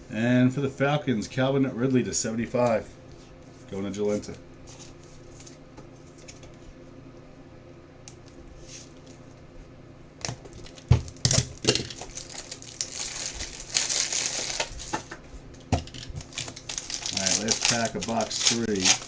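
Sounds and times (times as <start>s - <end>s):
trading cards clicking and rustling: 10.3s - 19.0s
plastic wrapper crinkling: 10.5s - 19.0s.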